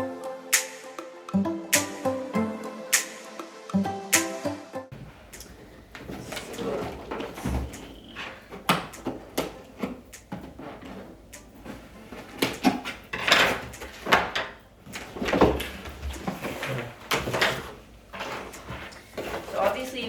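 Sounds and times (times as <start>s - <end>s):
cardboard flaps knocking and clicking: 5.0s - 19.6s
packaging scraping and rustling: 6.0s - 20.0s.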